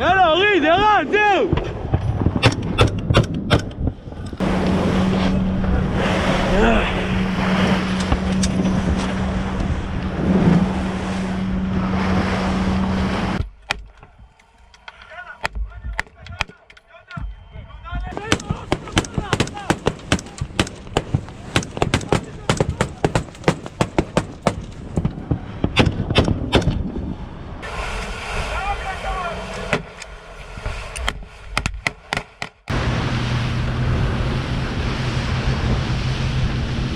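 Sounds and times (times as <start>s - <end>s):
wind: 0.0s - 36.9s
wind on microphone: 1.5s - 13.5s, 32.7s - 36.9s
motor hum: 1.7s - 14.6s
sea noise: 3.8s - 16.0s, 17.1s - 36.9s.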